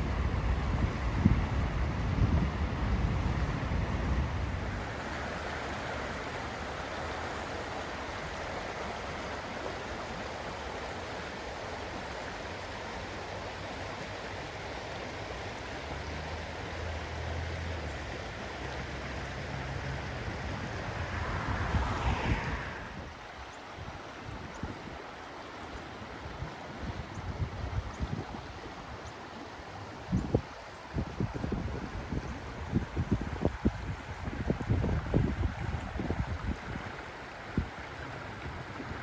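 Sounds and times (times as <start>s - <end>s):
wind buffeting microphone: 0.0s - 5.4s, 18.7s - 25.0s, 26.2s - 29.0s, 30.0s - 39.0s
river water rushing: 0.0s - 39.0s.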